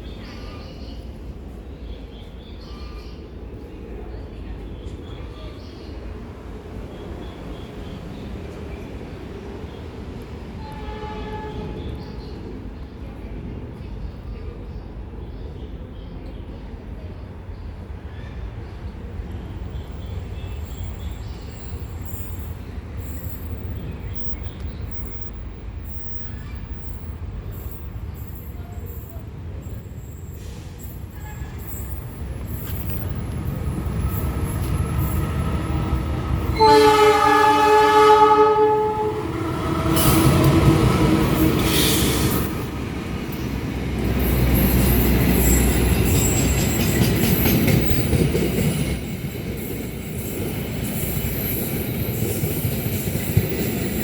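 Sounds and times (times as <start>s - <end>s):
diesel locomotive engine rumble: 0.0s - 54.0s
rail noise: 0.0s - 54.0s
locomotive horn: 10.6s - 12.1s, 34.6s - 42.5s.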